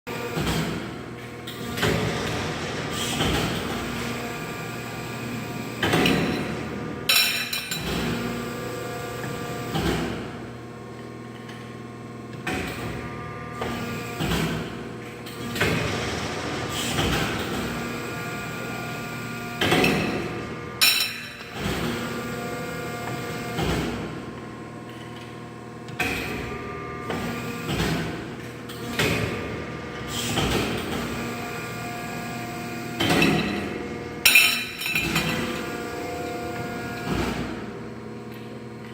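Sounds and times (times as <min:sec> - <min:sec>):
bending machine humming: 0:00.1 - 0:38.9
heavy machine clunks: 0:01.6 - 0:04.2.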